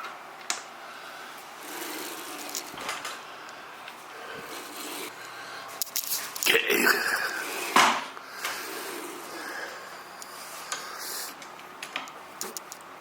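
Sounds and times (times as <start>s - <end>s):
miter saw parts rubbing and scraping: 1.6s - 2.9s, 4.3s - 5.2s, 8.5s - 9.5s.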